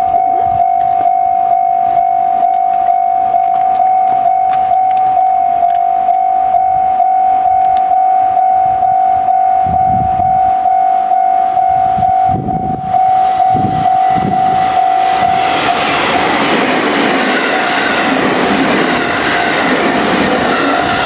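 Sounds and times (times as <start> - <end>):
level-crossing alarm ringing: 0.0 - 21.0
passing train rushing rattle: 3.5 - 21.0
train wheels clacking over rail joints: 15.1 - 21.0.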